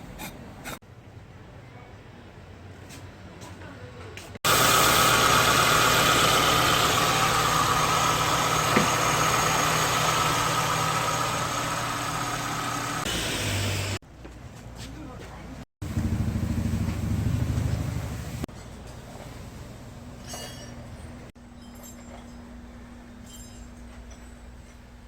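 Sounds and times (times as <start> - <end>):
air conditioning compressor whine: 4.5 - 14.0
car engine running: 4.5 - 14.0, 15.8 - 18.5.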